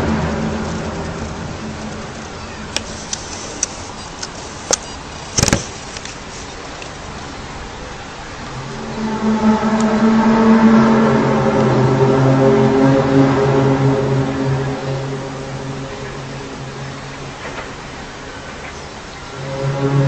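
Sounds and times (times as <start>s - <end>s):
brass-like droning tone: 0.0s - 2.8s, 7.5s - 20.0s
outdoor rumble: 0.0s - 20.0s
sharp clicks: 1.8s - 7.0s.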